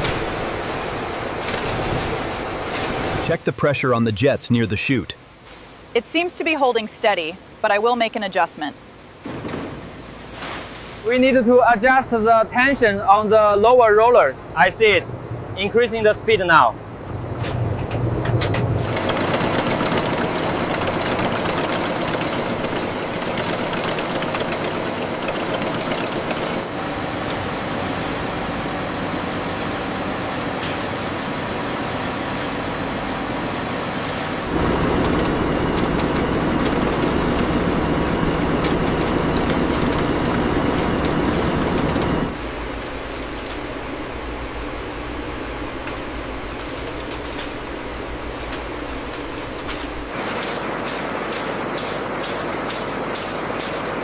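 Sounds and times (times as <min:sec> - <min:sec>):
faint machine whines: 0:00.0 - 0:04.3, 0:11.1 - 0:54.0
factory machinery rumble: 0:11.1 - 0:54.0.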